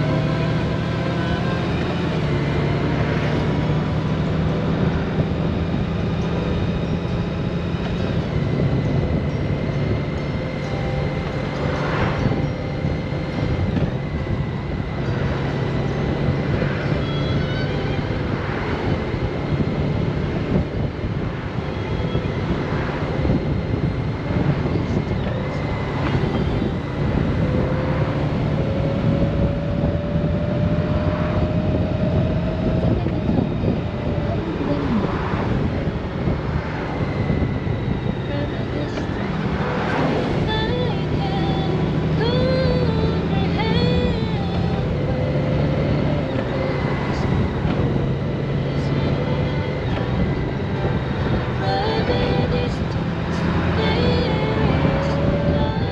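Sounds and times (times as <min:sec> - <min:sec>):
motorcycle engine drone: 0:00.0 - 0:55.9
wind and road noise: 0:00.0 - 0:55.9.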